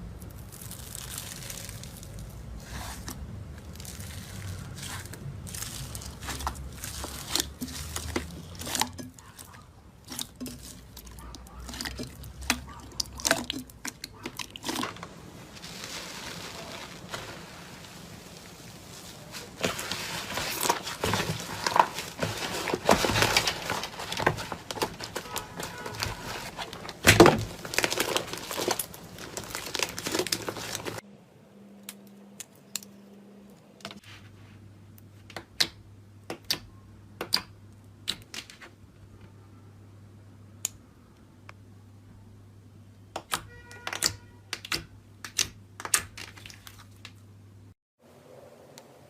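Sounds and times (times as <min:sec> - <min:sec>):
slime crackling and popping: 0:00.2 - 0:31.0.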